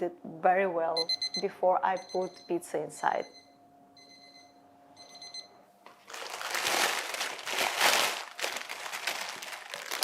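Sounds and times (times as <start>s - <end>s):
electronic beep tone: 1.0s - 2.6s
plastic crinkling and rustling: 5.8s - 10.0s.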